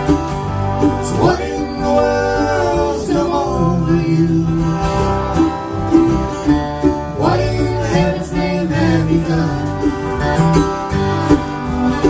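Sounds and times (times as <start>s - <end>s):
acoustic band playing: 0.0s - 12.0s
guitar strumming and picking: 0.0s - 12.0s
person singing: 1.1s - 4.9s, 7.1s - 9.9s.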